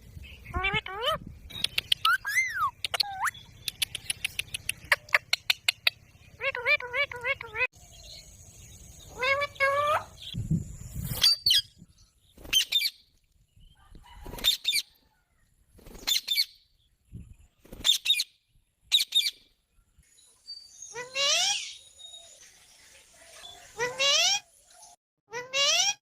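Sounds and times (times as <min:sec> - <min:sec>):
parrot shrill calls: 0:02.1 - 0:03.4, 0:09.1 - 0:10.3, 0:20.9 - 0:21.8.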